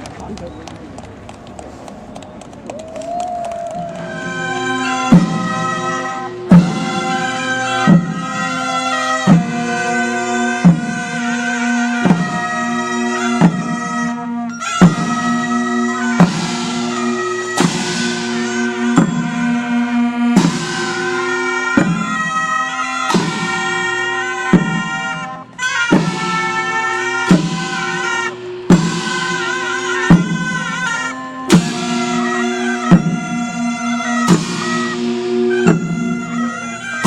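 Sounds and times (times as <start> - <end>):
shrill shawm long notes: 2.8 - 28.4
drum beats: 5.0 - 8.6, 9.2 - 37.0.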